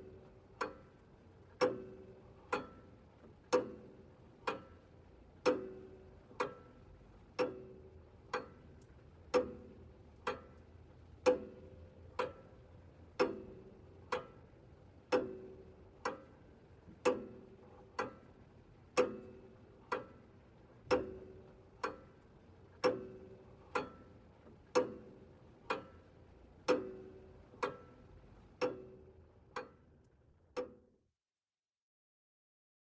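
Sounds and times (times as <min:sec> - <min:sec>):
wall clock ticking: 0:09.3 - 0:09.6, 0:20.8 - 0:22.1, 0:22.8 - 0:24.1, 0:25.7 - 0:26.0, 0:26.6 - 0:28.0, 0:28.6 - 0:29.8, 0:30.6 - 0:30.8.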